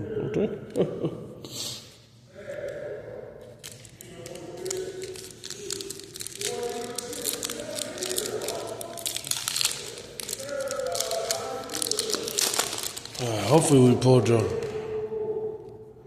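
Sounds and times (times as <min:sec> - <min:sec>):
foil wrapper crinkling and tearing: 0:03.6 - 0:13.8.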